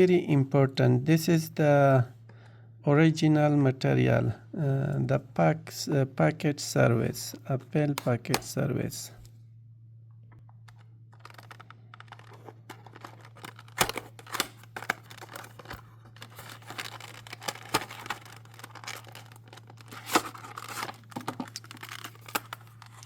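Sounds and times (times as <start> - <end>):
steady low hum: 0.0 - 23.0
packaging crinkling and tearing: 10.7 - 23.0.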